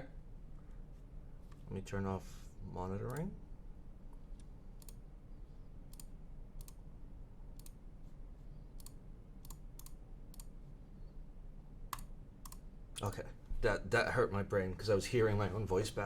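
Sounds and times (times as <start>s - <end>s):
faint room noise: 0.0s - 16.0s
sharp mouse clicks: 5.9s - 6.8s, 7.6s - 7.8s, 8.8s - 10.5s, 11.9s - 12.6s.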